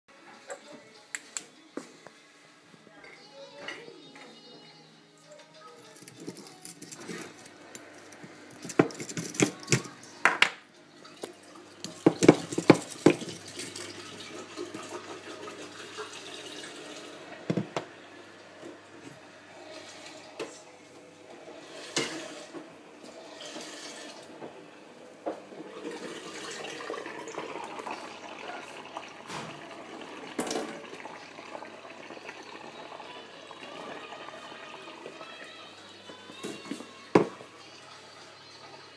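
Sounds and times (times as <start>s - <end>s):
water running and splashing: 11.0s - 17.3s.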